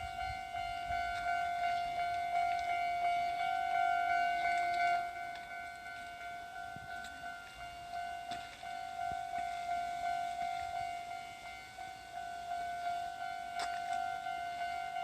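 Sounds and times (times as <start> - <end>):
railroad crossing alarm ringing: 0.0 - 15.0.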